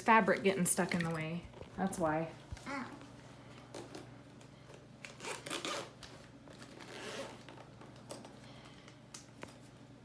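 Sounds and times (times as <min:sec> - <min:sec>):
zipper of fabric bag scraping: 0:05.1 - 0:06.0, 0:06.6 - 0:07.5.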